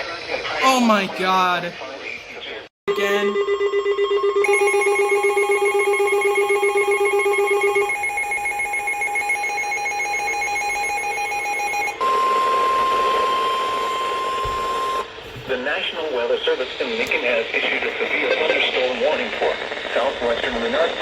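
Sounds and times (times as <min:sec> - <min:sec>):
pulsing multi-tone alarm: 0:02.9 - 0:15.1.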